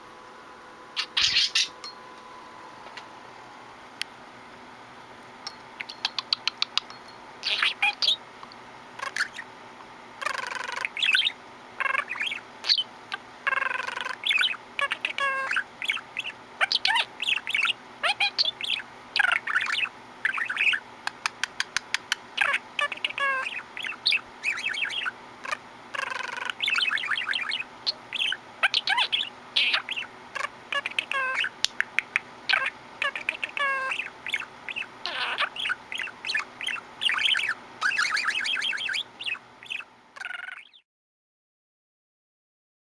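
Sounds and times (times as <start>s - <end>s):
budgerigar chattering and warbling: 1.0s - 1.8s, 5.8s - 8.2s, 9.0s - 9.5s, 10.2s - 20.8s, 21.6s - 40.8s.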